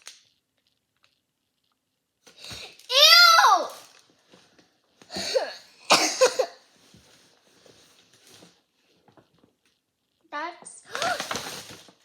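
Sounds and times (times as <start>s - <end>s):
girl coughing: 5.1s - 6.6s.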